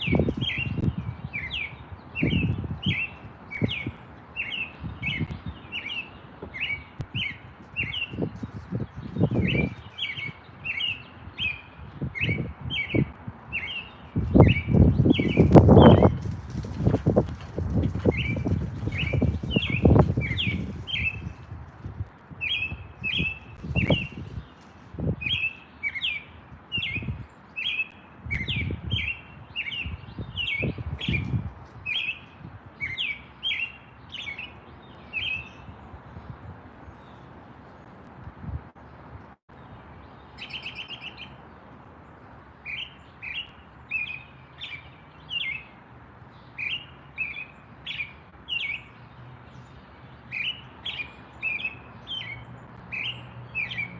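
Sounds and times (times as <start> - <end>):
buzzy bird trill: 0.0 - 21.6, 22.4 - 27.8
small birds chirping: 0.0 - 53.9.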